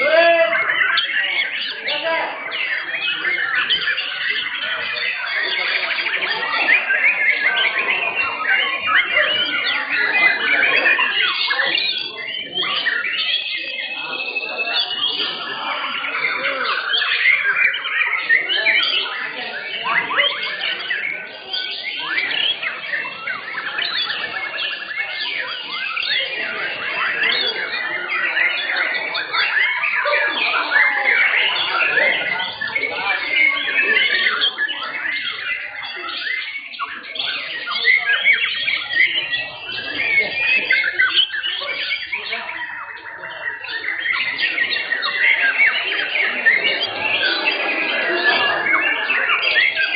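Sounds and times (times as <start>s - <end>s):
birds singing whistles and trills: 0.0s - 49.9s.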